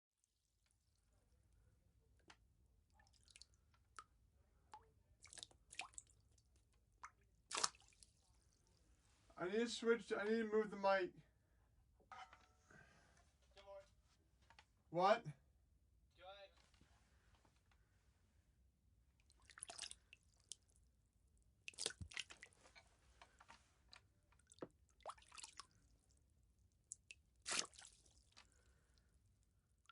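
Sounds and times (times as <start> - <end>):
water droplets dripping: 2.2 - 8.6, 21.6 - 22.5, 23.9 - 28.7
water droplets splashing: 7.0 - 8.1, 21.7 - 22.4.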